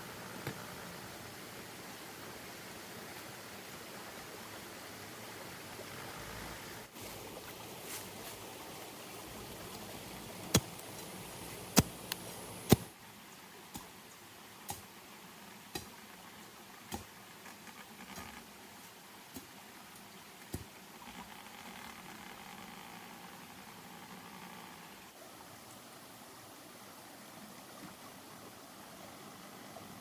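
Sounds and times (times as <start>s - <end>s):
steady hiss: 0.0s - 30.0s.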